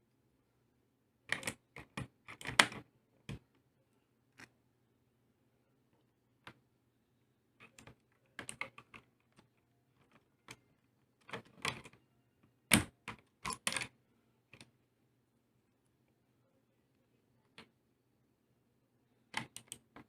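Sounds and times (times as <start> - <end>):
mechanical keyboard clicks: 1.3 - 2.8.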